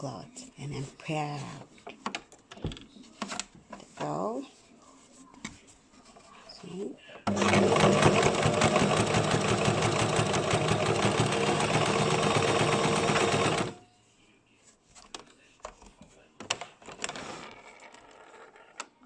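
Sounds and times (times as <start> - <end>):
sewing machine stitching: 7.3 - 13.8.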